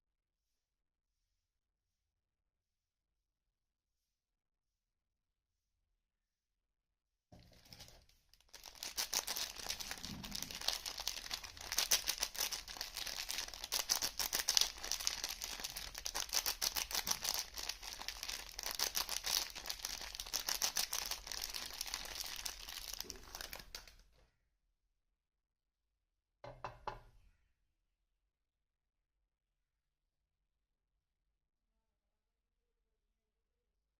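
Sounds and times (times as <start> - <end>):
packaging crinkling and tearing: 7.5 - 24.0.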